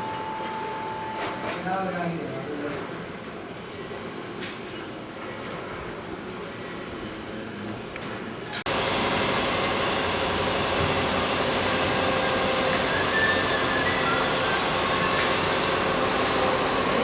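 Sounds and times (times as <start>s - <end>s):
machine rumble and hiss: 4.4s - 17.0s
faint whistling tones: 12.9s - 15.2s.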